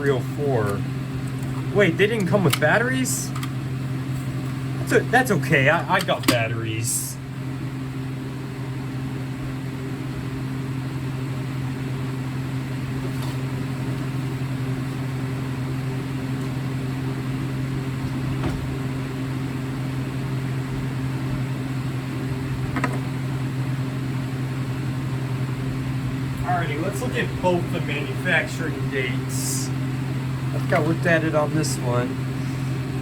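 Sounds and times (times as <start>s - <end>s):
low machine hum: 0.0s - 33.0s.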